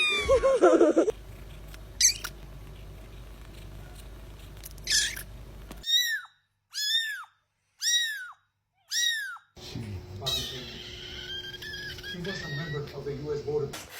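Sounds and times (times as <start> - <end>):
cat meowing: 0.0 - 0.4, 5.8 - 9.5, 10.3 - 12.9.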